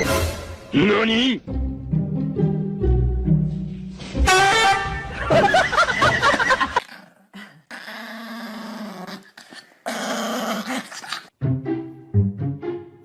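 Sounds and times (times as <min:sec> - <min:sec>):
dog vocalizing: 0:08.6 - 0:11.3.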